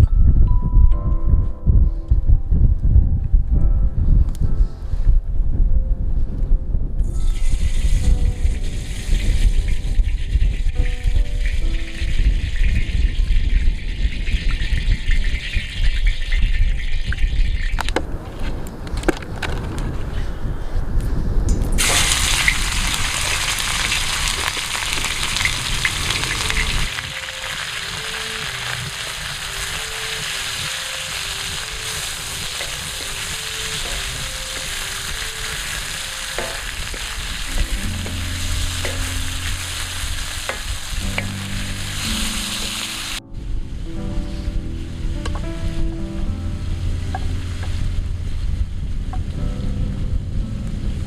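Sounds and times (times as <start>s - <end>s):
soft background music: 0.0s - 18.5s, 21.7s - 51.0s
meat and vegetables sizzling: 7.2s - 17.7s, 21.8s - 43.8s.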